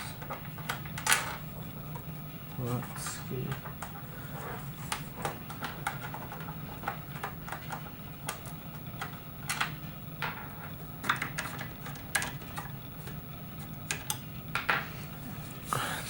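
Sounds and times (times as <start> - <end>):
low steady hum: 6.8 - 16.0.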